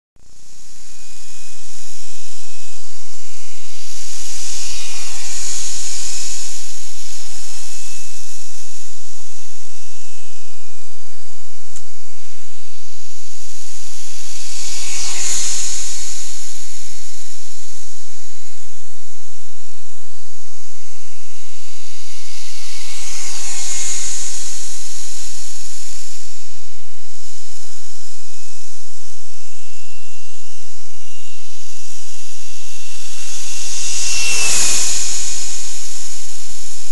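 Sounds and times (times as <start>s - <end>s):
model jet hiss with whistle: 0.4s - 10.8s, 11.8s - 18.6s, 20.6s - 36.9s.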